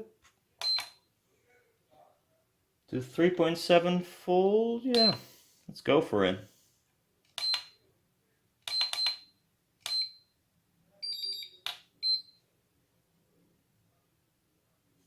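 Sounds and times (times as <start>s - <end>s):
two-tone chirp: 4.9s - 5.3s, 11.0s - 12.4s.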